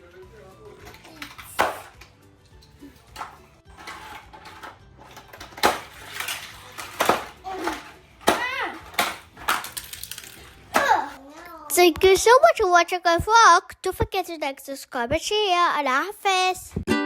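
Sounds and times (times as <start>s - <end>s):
plastic toy pieces clattering: 0.7s - 2.0s, 2.6s - 11.2s.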